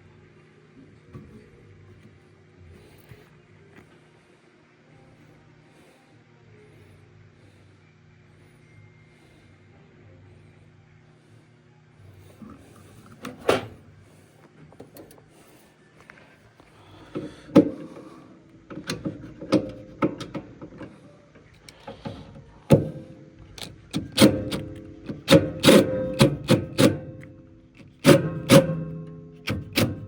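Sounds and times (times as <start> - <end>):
low steady hum: 0.0 - 30.0
metal parts knocking and clanking: 23.6 - 30.0.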